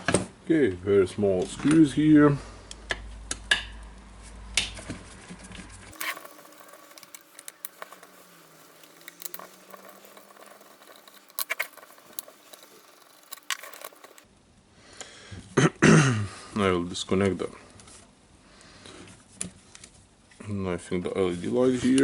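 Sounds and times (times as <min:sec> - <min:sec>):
plastic parts being handled: 0:05.9 - 0:14.2.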